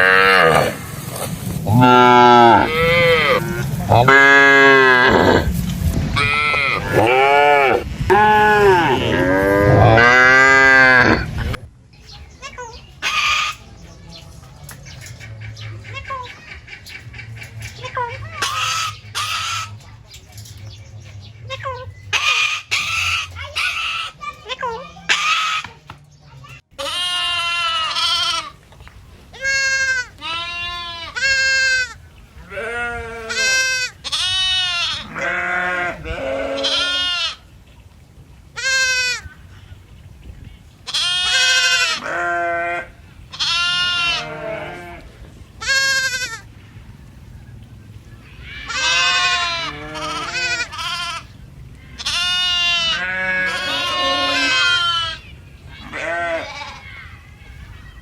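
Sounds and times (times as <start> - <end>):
goats bleating: 1.7 - 5.5, 6.2 - 11.4, 26.8 - 28.6, 29.4 - 37.4, 40.9 - 46.5, 48.3 - 51.3, 51.9 - 56.9.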